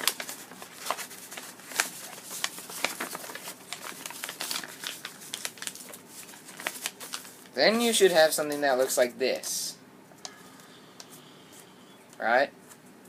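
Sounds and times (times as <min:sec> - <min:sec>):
paper crinkling as it is folded: 0:00.0 - 0:09.5.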